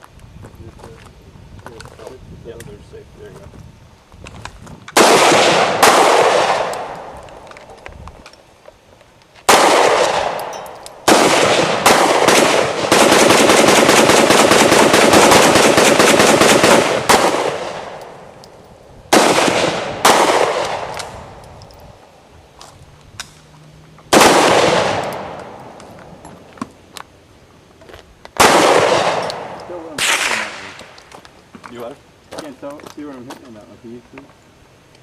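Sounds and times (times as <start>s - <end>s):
pistol gunshots with echo: 5.0s - 7.4s, 9.5s - 18.4s, 19.1s - 21.4s, 24.1s - 26.2s, 28.4s - 30.9s.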